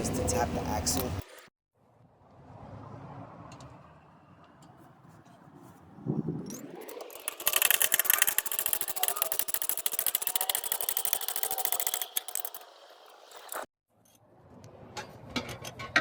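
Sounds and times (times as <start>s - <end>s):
hand ratchet clicking: 6.5s - 13.7s.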